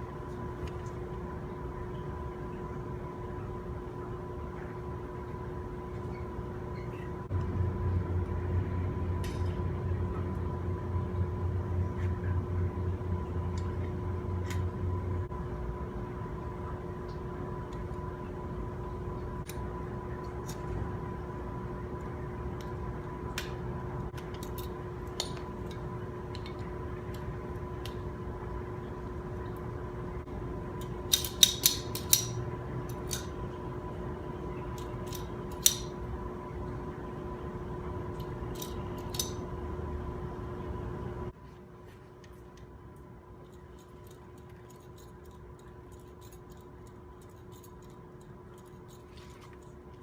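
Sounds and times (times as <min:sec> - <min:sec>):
steady hum with tones: 0:00.0 - 0:50.0.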